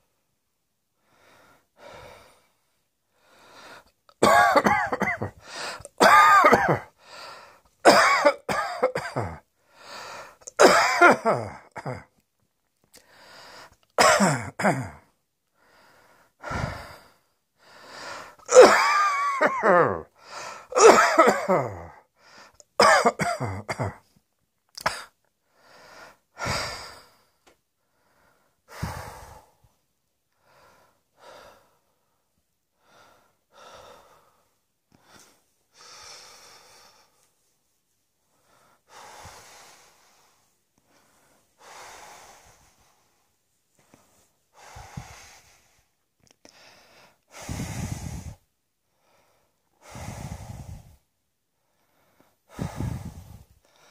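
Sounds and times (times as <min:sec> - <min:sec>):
person coughing: 0:04.2 - 0:06.9, 0:07.9 - 0:09.4, 0:10.5 - 0:12.1, 0:14.0 - 0:15.1, 0:18.5 - 0:20.1, 0:20.7 - 0:22.0, 0:22.8 - 0:24.1.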